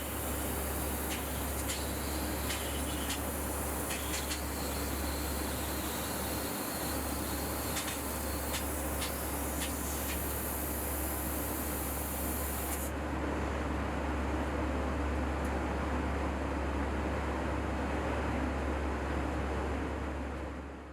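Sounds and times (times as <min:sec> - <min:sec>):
laser cutting jet hissing: 0:00.0 - 0:12.9
low machine hum: 0:00.0 - 0:20.9.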